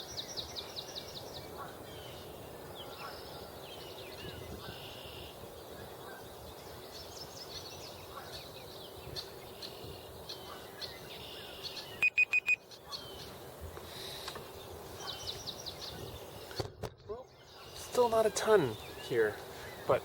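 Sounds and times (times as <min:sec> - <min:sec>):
small songbirds chirping: 0:00.0 - 0:20.0.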